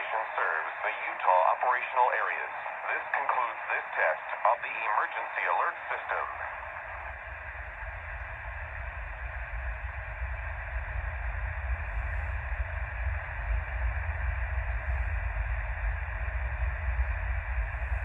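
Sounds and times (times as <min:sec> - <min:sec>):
radio static hiss: 0:00.0 - 0:06.8
low rumble: 0:06.4 - 0:18.0.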